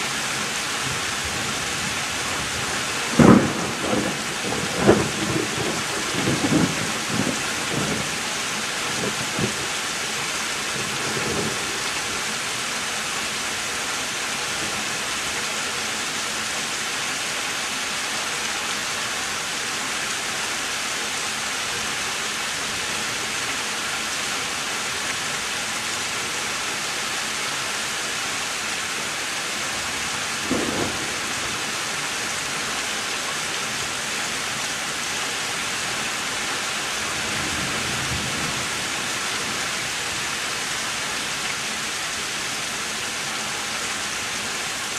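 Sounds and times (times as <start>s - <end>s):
heavy rain falling: 0.0s - 44.9s
thunder rumbling: 0.9s - 9.8s, 30.3s - 32.0s, 37.0s - 39.8s.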